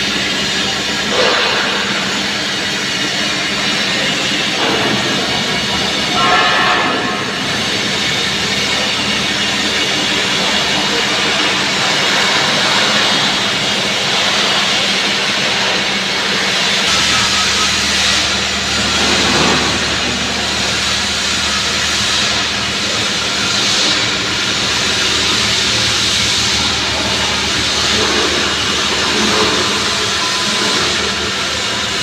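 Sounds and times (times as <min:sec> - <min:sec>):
welding arc hissing and buzzing: 0:00.0 - 0:14.6, 0:16.8 - 0:32.0
low hum: 0:16.9 - 0:32.0.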